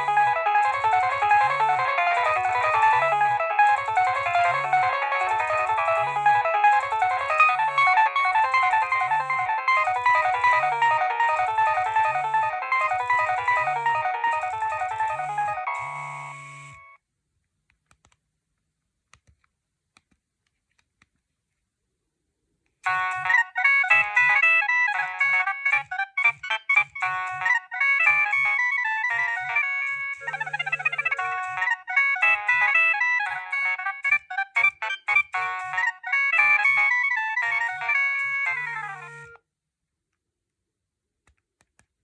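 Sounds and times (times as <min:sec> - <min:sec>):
fast staccato ringtone: 0:00.0 - 0:16.0, 0:22.9 - 0:39.4
polyphonic phone ringtone: 0:00.0 - 0:17.0, 0:22.9 - 0:39.4.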